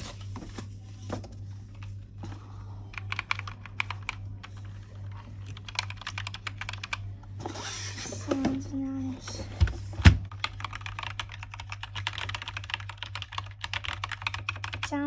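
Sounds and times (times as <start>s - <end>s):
mechanical keyboard typing: 2.9s - 7.0s, 10.3s - 15.0s.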